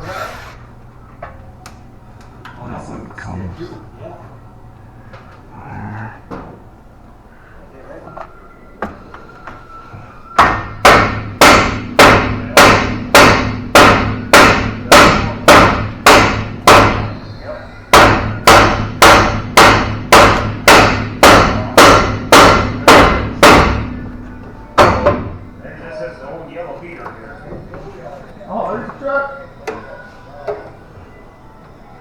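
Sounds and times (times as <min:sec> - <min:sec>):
hammer blows on metal: 0:10.4 - 0:17.2, 0:17.9 - 0:24.0.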